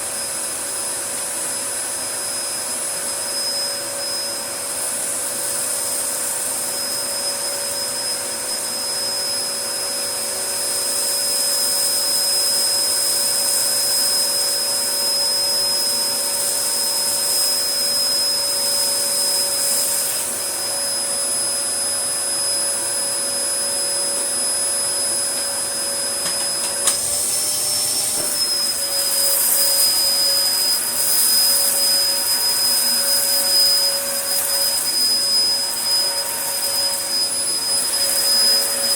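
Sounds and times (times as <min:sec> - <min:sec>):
vacuum cleaner motor whine: 0:00.0 - 0:38.9
vacuum cleaner click: 0:25.2 - 0:38.9.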